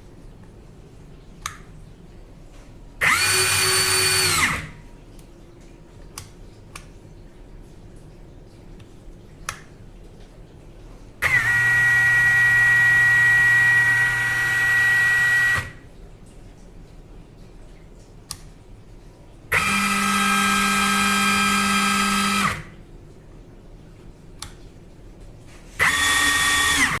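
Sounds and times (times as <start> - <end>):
impact wrench whining: 3.0 - 4.7, 11.2 - 15.8, 19.5 - 22.7, 25.8 - 27.0.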